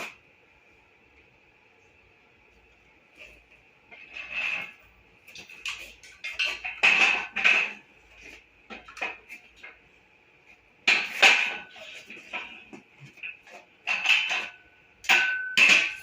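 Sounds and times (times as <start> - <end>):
metal tools and parts clattering: 5.4 - 7.9, 10.9 - 16.0.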